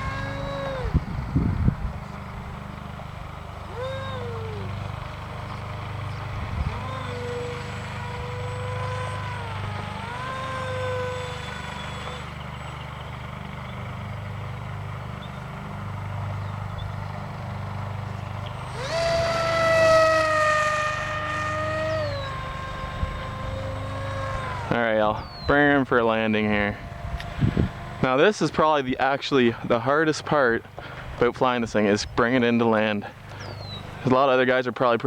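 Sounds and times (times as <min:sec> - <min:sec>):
rc plane motor whining: 0:00.0 - 0:02.6, 0:03.7 - 0:04.8, 0:05.4 - 0:12.6, 0:18.4 - 0:25.7, 0:26.6 - 0:28.1
steady low rumble: 0:00.7 - 0:03.6.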